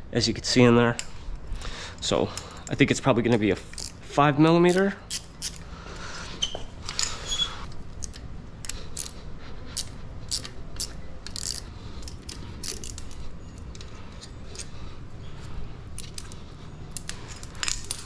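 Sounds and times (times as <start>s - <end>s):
allen key metallic clicks: 6.8s - 14.8s, 15.9s - 18.0s.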